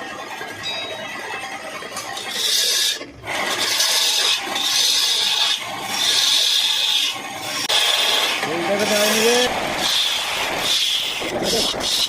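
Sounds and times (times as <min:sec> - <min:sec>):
tool scraping wood on lathe: 0:01.2 - 0:12.0.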